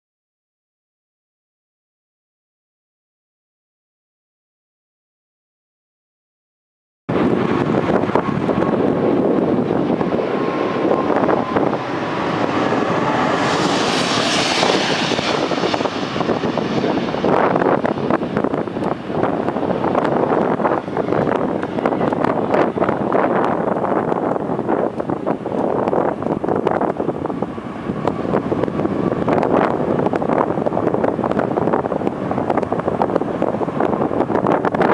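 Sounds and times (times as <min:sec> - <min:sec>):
jet airliner engines roaring: 0:07.1 - 0:34.9
wind buffeting microphone: 0:07.1 - 0:34.9.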